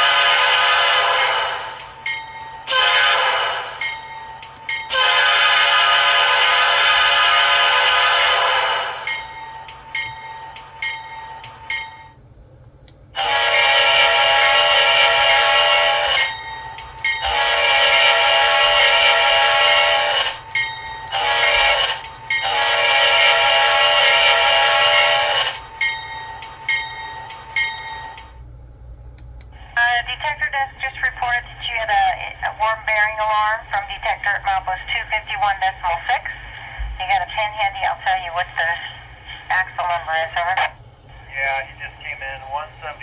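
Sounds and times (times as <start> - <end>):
locomotive air horn: 2.7 - 3.8, 4.9 - 9.0, 13.2 - 16.3, 17.2 - 20.4, 21.1 - 25.6
locomotive horn blasts: 13.2 - 16.3, 17.2 - 20.3.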